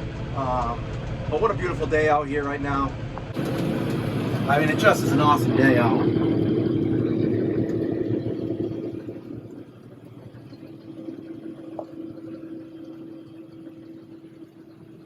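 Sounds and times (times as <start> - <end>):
tractor engine humming: 3.3 - 15.0.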